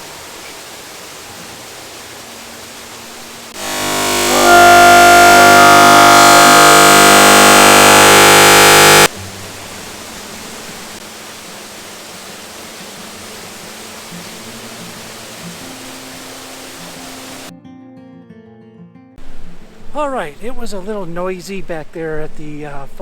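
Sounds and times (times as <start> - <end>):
sustained musical chord: 3.6 - 9.1
waterfall rushing: 9.0 - 17.5.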